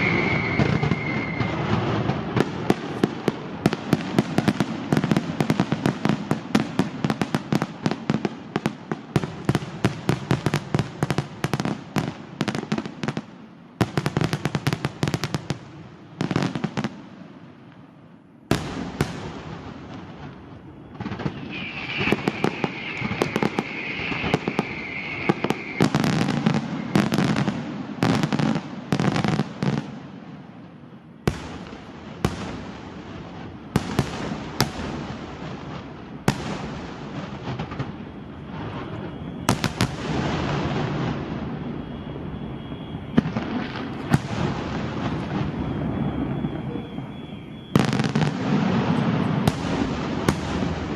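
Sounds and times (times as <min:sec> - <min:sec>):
high steady whistle: 0:00.0 - 0:02.8, 0:20.3 - 0:30.1, 0:36.2 - 0:50.4
fireworks crackling: 0:00.0 - 0:50.9
fireworks shells bursting: 0:18.8 - 0:29.8.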